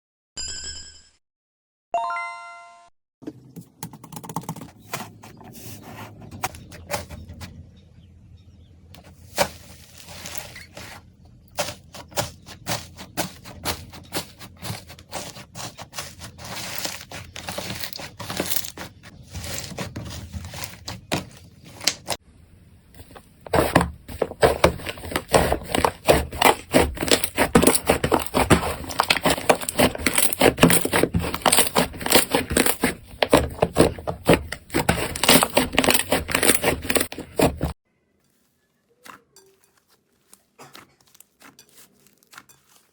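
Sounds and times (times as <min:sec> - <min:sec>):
slime squishing and crackling: 0:09.0 - 0:22.2, 0:23.0 - 0:42.9.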